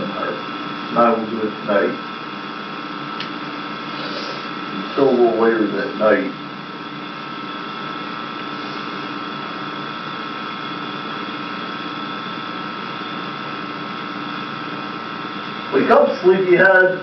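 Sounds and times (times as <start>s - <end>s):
steady mechanical hum: 0.0s - 17.0s.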